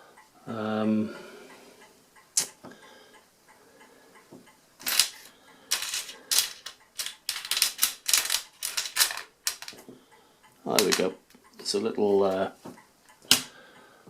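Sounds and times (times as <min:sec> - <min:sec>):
small metal parts clicking: 0:04.8 - 0:09.8.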